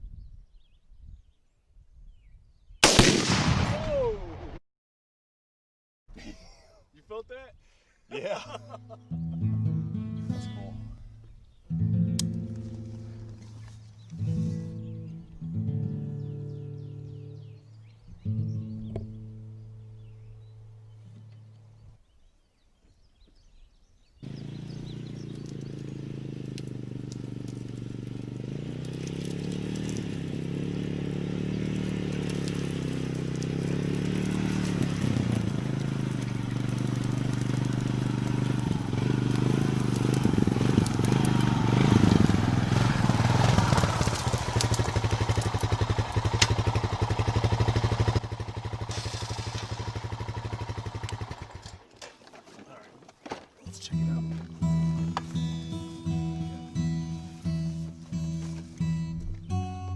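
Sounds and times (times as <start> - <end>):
vehicle engine running: 24.2 - 51.9.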